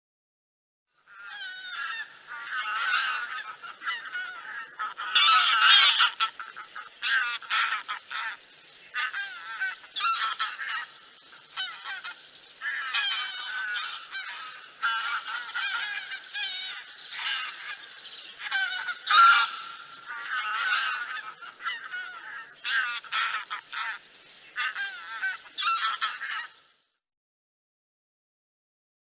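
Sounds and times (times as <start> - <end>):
geese honking: 1.1 - 26.6.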